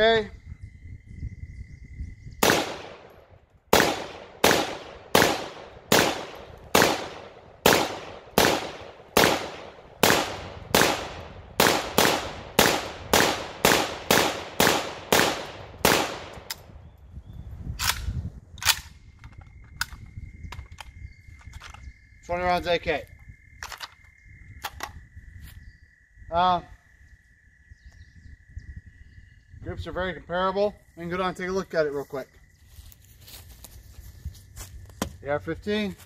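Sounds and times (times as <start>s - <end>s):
rifle shots echoing: 2.4s - 16.6s.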